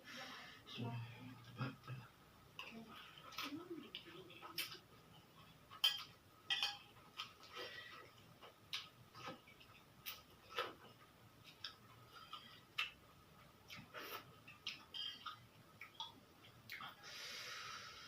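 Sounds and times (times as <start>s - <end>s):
person chewing noodles: 7.1s - 17.0s.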